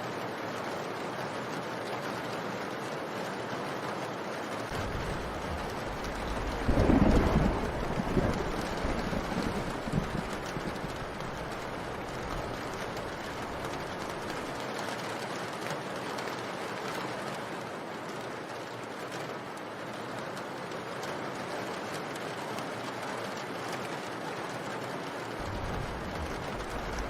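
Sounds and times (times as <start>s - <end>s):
steady rain: 0.0s - 27.0s
low rumble of thunder: 4.7s - 14.6s, 25.4s - 27.0s
raindrop ticks: 4.7s - 17.4s, 18.1s - 27.0s.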